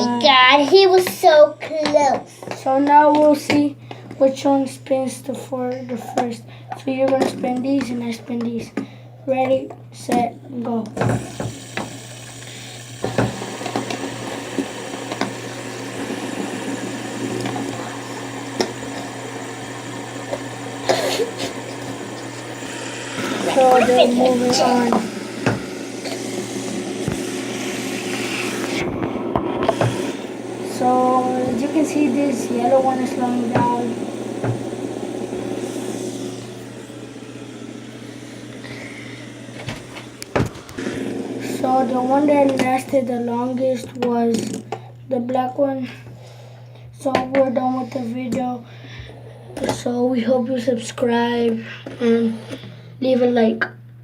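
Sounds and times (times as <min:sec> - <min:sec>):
fidget spinner clicks: 0:11.0 - 0:22.6
whir of spinning bearings: 0:11.0 - 0:44.7.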